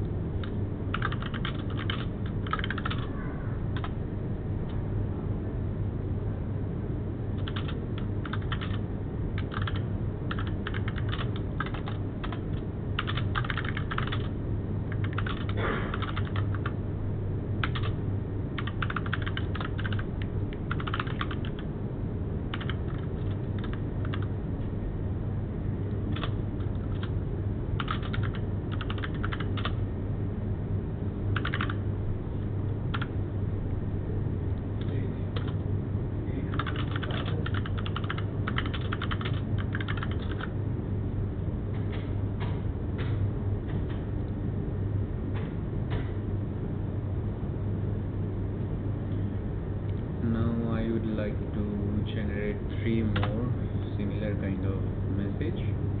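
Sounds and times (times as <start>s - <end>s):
steady low hum: 0.0s - 56.0s
typing on keyboard: 0.4s - 3.1s, 3.8s - 4.0s, 7.4s - 8.8s, 9.4s - 14.3s, 14.9s - 16.7s, 17.6s - 18.0s, 18.6s - 20.0s, 20.6s - 21.6s, 22.5s - 24.3s, 26.1s - 27.1s, 27.8s - 29.8s, 31.4s - 31.8s, 32.9s - 33.1s, 35.4s - 35.6s, 36.5s - 40.5s.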